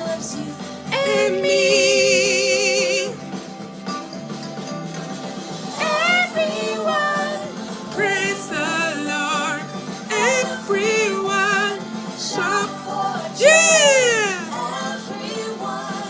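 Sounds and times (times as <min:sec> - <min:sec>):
backing music: 0:00.5 - 0:15.0
person singing: 0:00.9 - 0:03.3, 0:08.0 - 0:15.0.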